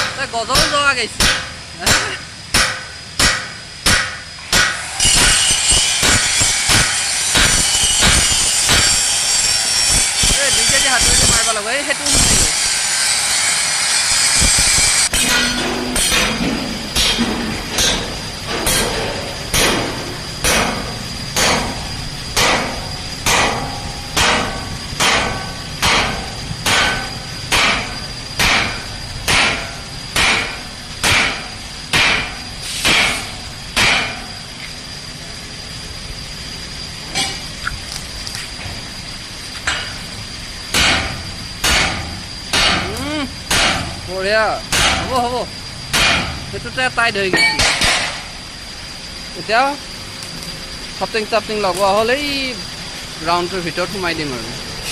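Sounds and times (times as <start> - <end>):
hammer striking steel: 0.0 - 12.7, 14.6 - 34.3, 40.7 - 44.0, 44.7 - 45.2, 45.9 - 46.4, 47.3 - 48.3
loud hiss: 0.0 - 54.9.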